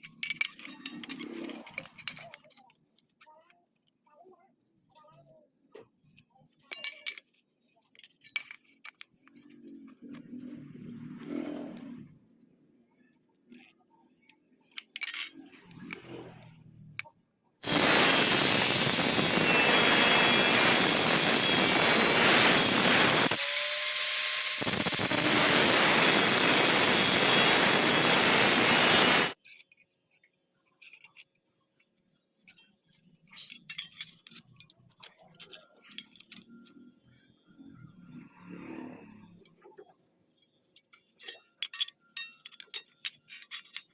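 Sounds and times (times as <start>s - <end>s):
arc welding crackling hiss: 17.6s - 29.4s.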